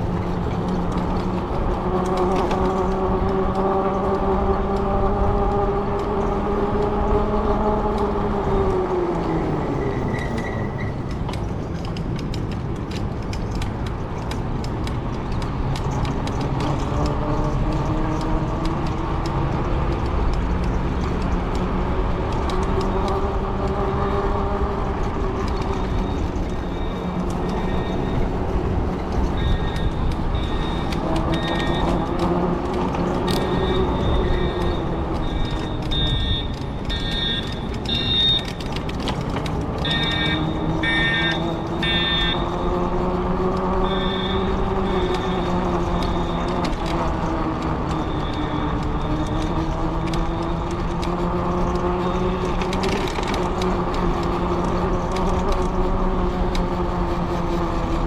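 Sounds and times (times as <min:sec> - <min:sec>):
electric motor whining: 0:39.4 - 0:58.0.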